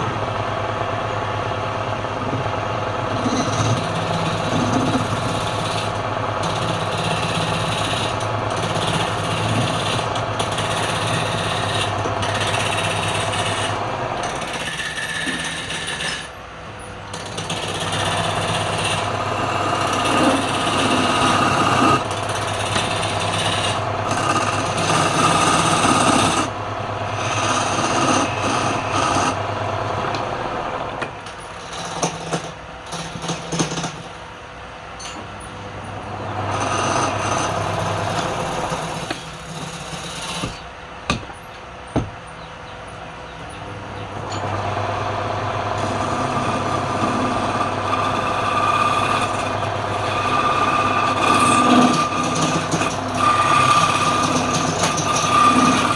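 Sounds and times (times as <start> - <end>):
wood lathe running: 0.0 - 16.4, 17.1 - 30.7, 31.6 - 34.1, 36.2 - 40.6, 44.4 - 55.9
tool cutting spinning wood: 1.9 - 16.4, 17.1 - 30.2, 30.9 - 34.3, 36.4 - 40.8, 44.3 - 55.9.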